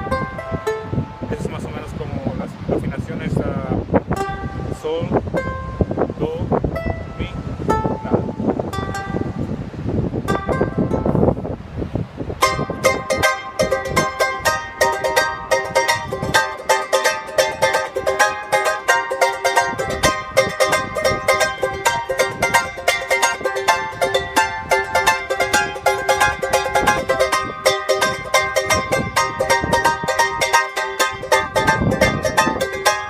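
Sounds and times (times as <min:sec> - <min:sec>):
ukulele strummed quickly: 0:12.4 - 0:33.0.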